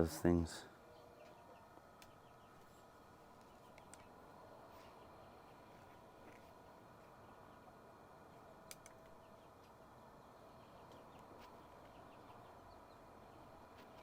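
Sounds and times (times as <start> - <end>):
faint clicks: 8.7 - 9.7.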